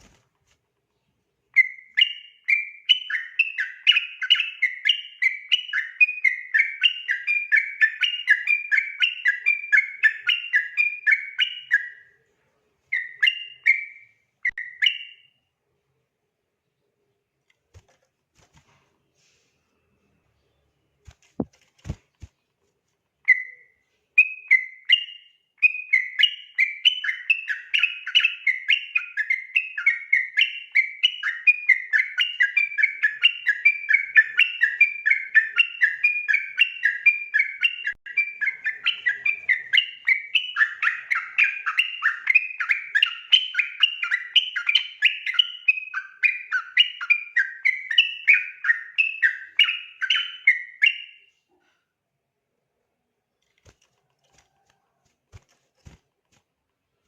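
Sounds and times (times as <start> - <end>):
bird warbling: 31.0 - 51.2.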